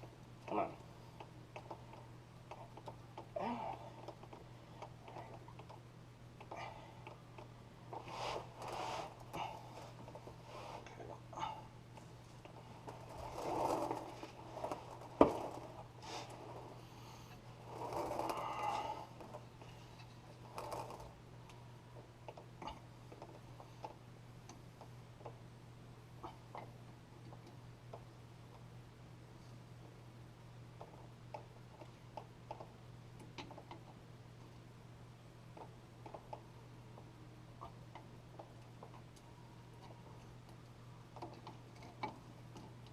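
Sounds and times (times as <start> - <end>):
steady low hum: 0.0 - 42.9
person grunting: 3.4 - 3.8.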